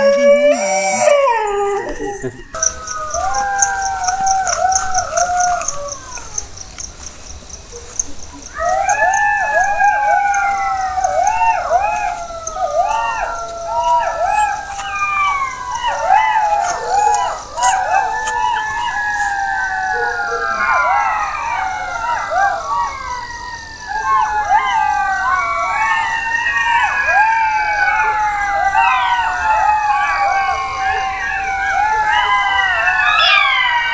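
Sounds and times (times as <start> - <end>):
wailing glide: 0.0 - 21.0
dogs howling: 0.0 - 33.9.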